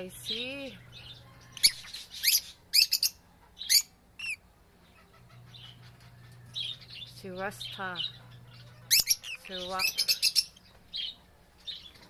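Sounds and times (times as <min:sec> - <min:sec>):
birds giving shrill chirps: 0:00.2 - 0:12.0.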